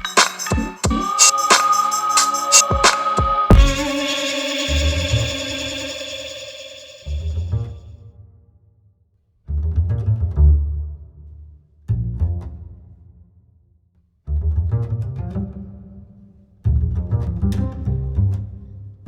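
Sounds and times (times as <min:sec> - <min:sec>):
music with deep bass line: 0:03.5 - 0:04.0.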